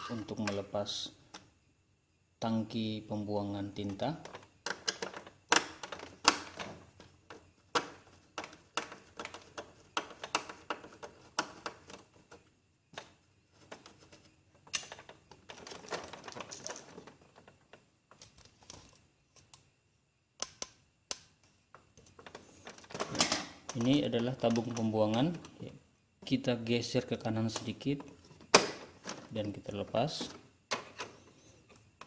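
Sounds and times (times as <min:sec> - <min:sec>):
rustling handling: 0:14.9 - 0:19.6.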